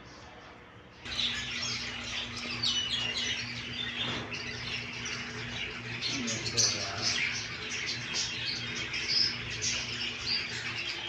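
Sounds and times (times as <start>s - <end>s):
small birds chirping: 1.0s - 11.0s.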